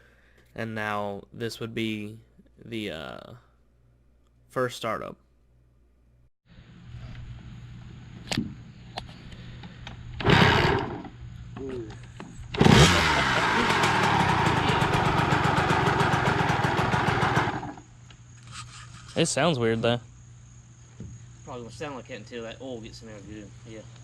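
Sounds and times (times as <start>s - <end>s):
dirt bike engine running: 12.6s - 17.9s.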